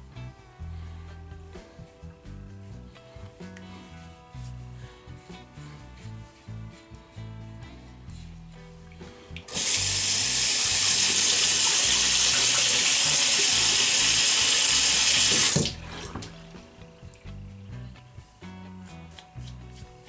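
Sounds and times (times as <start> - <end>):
quiet background music: 0.0 - 20.0
tap running into a sink: 9.4 - 16.4.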